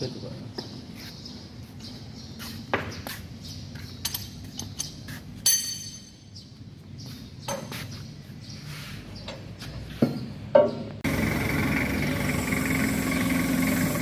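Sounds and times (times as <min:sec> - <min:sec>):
steel tools knocking on metal: 0:04.0 - 0:06.2
ringing metallic clang: 0:05.4 - 0:06.4.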